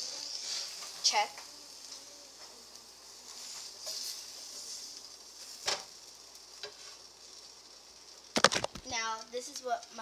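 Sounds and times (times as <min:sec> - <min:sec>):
butter sizzling in frying pan: 0:00.0 - 0:10.0.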